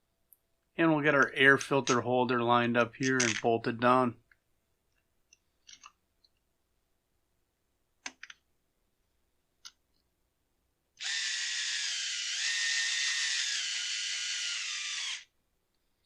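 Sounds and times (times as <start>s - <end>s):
electric drill whining: 11.0s - 15.3s.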